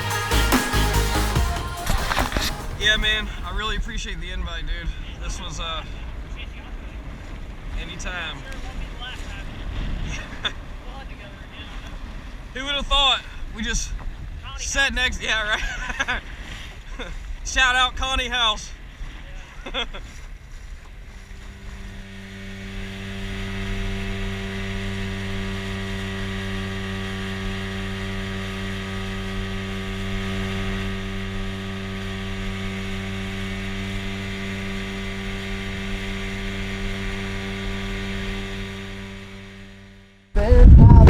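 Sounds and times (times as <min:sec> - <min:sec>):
steady motor hum: 0:20.9 - 0:41.0.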